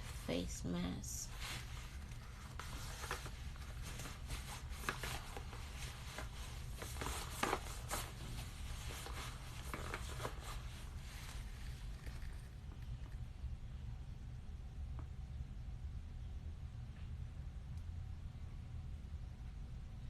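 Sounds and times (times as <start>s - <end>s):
low steady hum: 0.0s - 20.0s
packaging rustling and crinkling: 1.3s - 13.2s.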